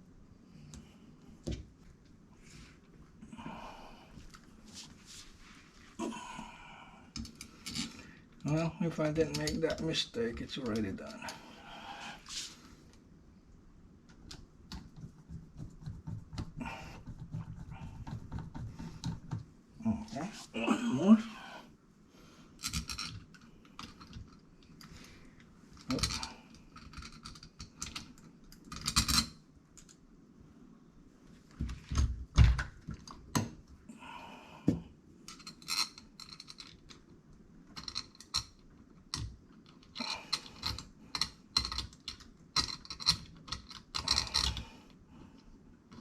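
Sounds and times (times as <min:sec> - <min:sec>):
door lock hardware clicking and rattling: 0:35.3 - 0:37.0, 0:37.8 - 0:44.6.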